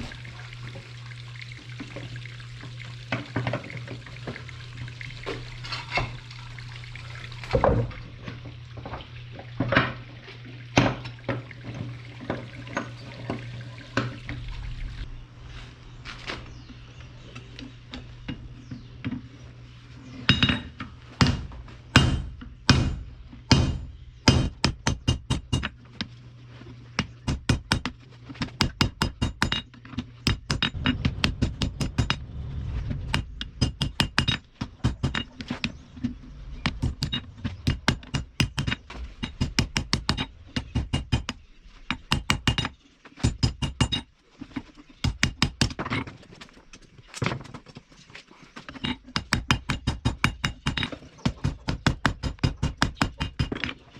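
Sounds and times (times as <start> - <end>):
steady low hum: 0.0 - 43.8
hammer striking steel on anvil: 20.3 - 25.7.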